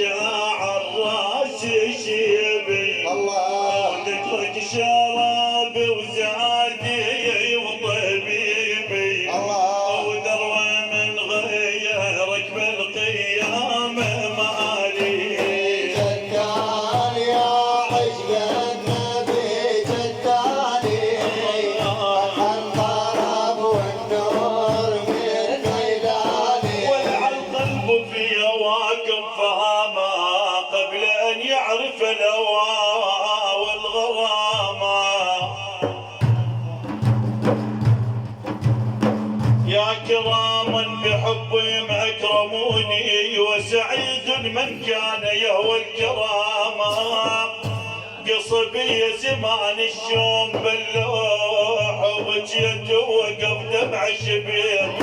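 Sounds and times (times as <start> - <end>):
devotional praise music: 0.0 - 55.0
steady drum beat: 13.0 - 28.4, 34.5 - 55.0.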